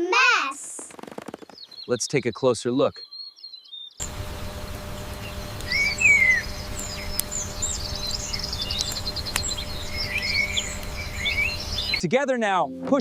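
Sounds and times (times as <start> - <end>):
birds chirping and warbling: 0.5 - 12.0
outdoor background hiss: 4.0 - 13.0
sharp clicks: 7.0 - 9.7.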